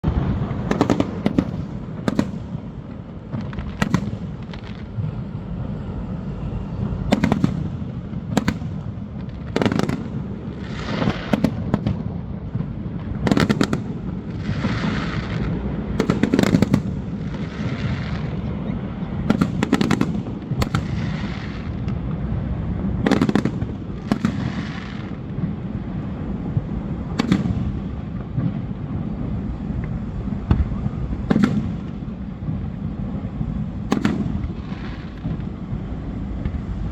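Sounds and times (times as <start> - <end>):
steady low rumble: 0.0 - 10.6, 25.1 - 36.9
fireworks bangs: 0.0 - 36.9
fireworks crackling: 0.0 - 36.9.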